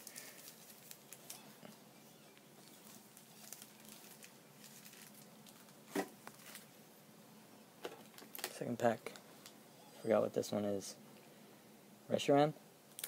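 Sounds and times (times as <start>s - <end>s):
handling cards and packaging: 0.0s - 6.8s, 7.8s - 9.6s.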